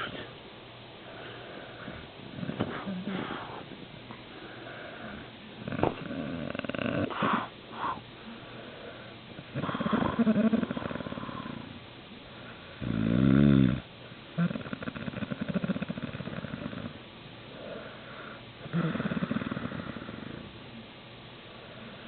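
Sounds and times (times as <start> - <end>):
man snoring loudly: 12.8 - 13.8, 18.7 - 20.4.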